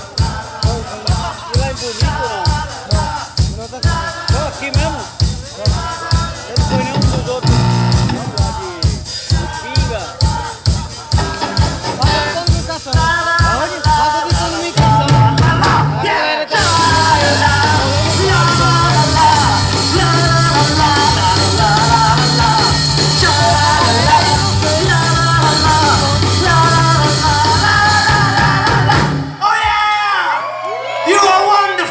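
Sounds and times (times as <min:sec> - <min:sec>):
person singing: 0:00.0 - 0:29.3
drum hits: 0:00.0 - 0:29.7
bass notes: 0:06.6 - 0:08.7, 0:16.6 - 0:29.3.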